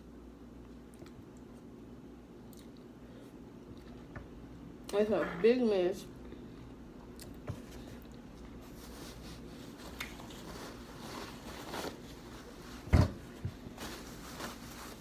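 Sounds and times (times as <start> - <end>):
person chewing: 2.5 - 2.9.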